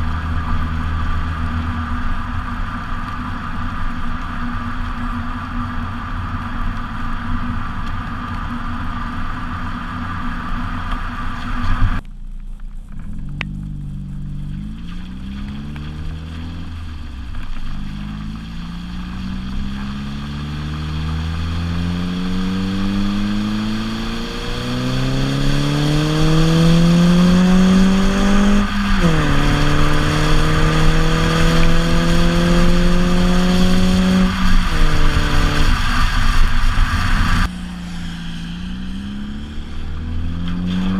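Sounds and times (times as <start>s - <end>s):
car engine accelerating through gears: 12.9s - 40.9s.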